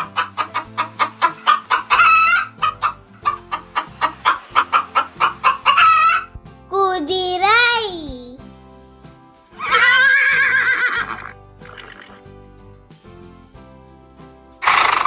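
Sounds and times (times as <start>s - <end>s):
chicken cackling: 0.0s - 6.3s.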